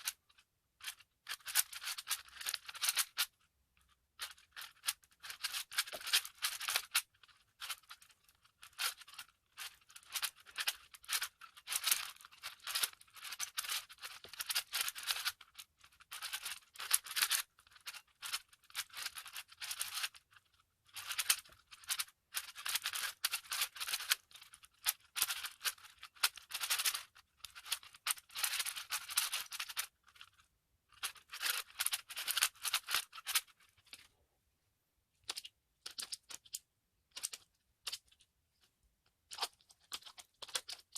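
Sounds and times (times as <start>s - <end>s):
puzzle cube clicking and rattling: 0.0s - 34.1s, 35.2s - 40.9s.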